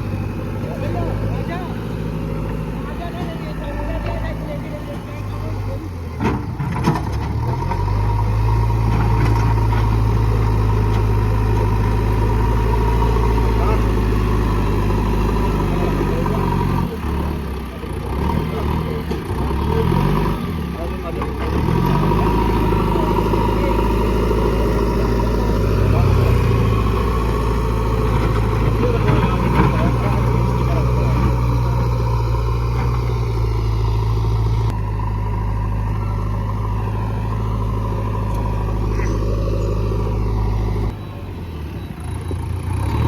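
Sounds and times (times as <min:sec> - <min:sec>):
excavator diesel engine running: 0:00.0 - 0:43.0.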